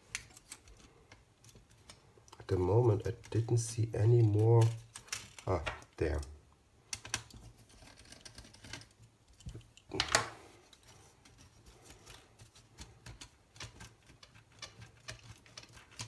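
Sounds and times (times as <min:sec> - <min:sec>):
laptop parts clicking: 0:06.9 - 0:16.0.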